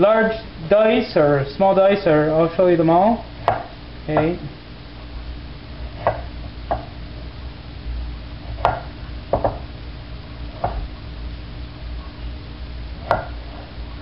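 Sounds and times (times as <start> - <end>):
knife knocking cutting board: 3.5 - 4.4, 8.6 - 9.7, 10.6 - 10.8, 13.0 - 13.4.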